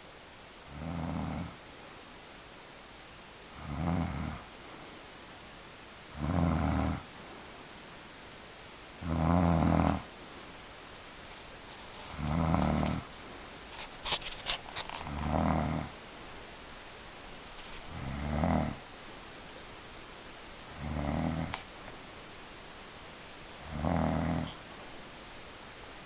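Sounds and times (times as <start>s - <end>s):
woman snoring: 0.7s - 1.6s, 3.6s - 4.5s, 6.1s - 7.0s, 9.0s - 10.1s, 12.1s - 13.1s, 15.0s - 15.9s, 17.9s - 18.8s, 20.7s - 21.6s, 23.6s - 24.6s.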